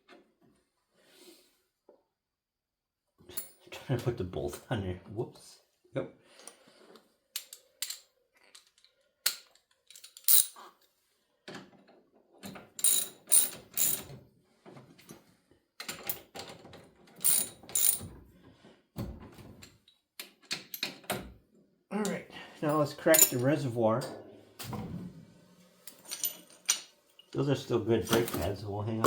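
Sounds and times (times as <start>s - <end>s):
metal tools clinking on bolts: 9.9s - 10.6s, 12.8s - 14.1s, 17.2s - 18.1s, 22.7s - 23.6s, 25.9s - 27.4s.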